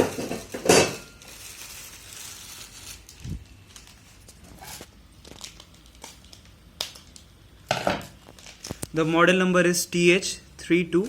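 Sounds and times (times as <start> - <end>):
packaging rustling: 0.0 - 7.4, 8.1 - 8.9
plastic wrap crinkling: 0.0 - 9.0.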